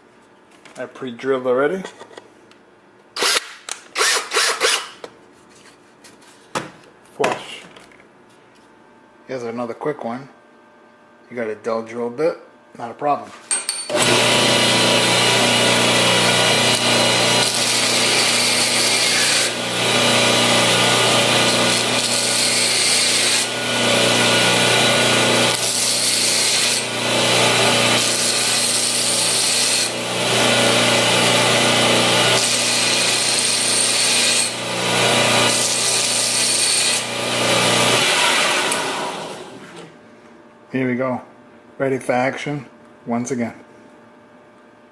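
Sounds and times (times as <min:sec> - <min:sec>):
belt sander grinding drill bit: 0:13.9 - 0:39.6.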